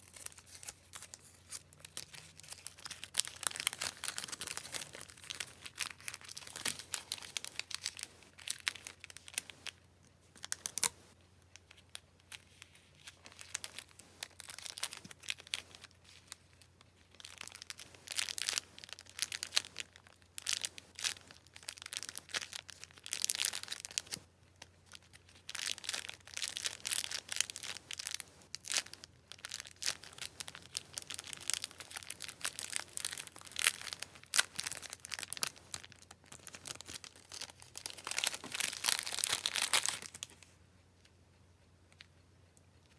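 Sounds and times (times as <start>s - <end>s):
packing materials crinkling: 0.0s - 40.5s.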